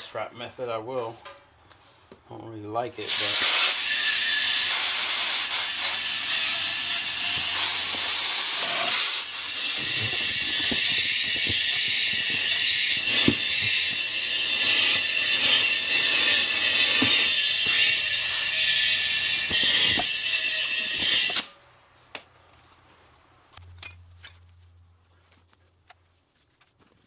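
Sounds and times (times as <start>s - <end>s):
compressed air hissing into tire: 3.0s - 18.0s.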